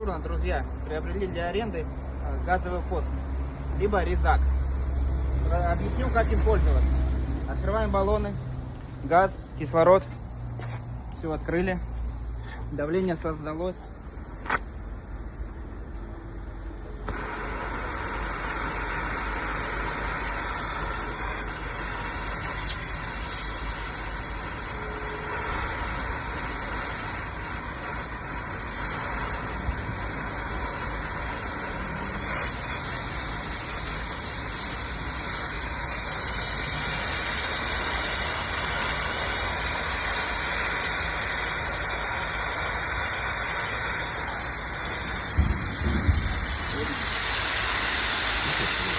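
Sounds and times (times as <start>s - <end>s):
cutting torch hissing: 17.0s - 48.9s.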